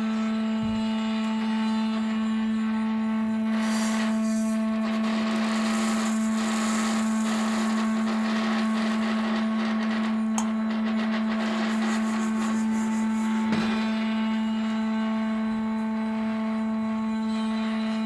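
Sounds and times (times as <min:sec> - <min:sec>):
low drone note: 0:00.0 - 0:18.0.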